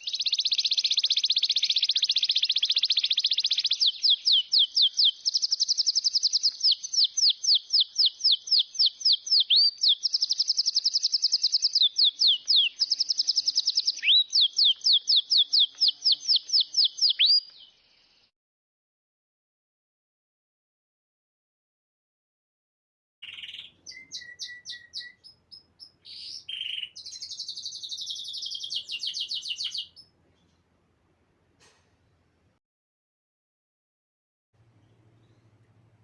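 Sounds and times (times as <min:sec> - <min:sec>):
songbird singing fast trills: 0:00.0 - 0:18.3, 0:23.2 - 0:30.1.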